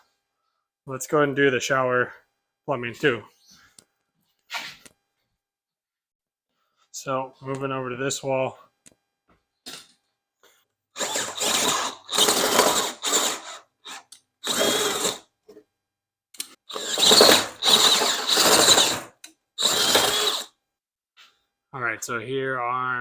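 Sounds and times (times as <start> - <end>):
power drill boring holes: 11.0 - 15.3, 16.7 - 20.6.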